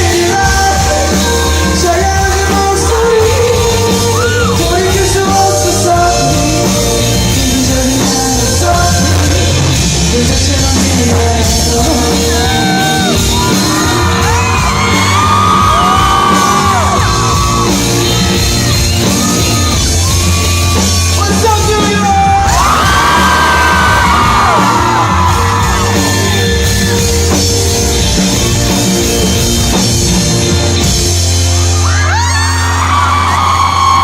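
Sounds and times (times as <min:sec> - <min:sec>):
man singing: 0:00.0 - 0:17.0, 0:21.2 - 0:25.6
live band playing: 0:00.0 - 0:34.0
audience yelling and whooping: 0:11.7 - 0:29.8, 0:30.6 - 0:34.0.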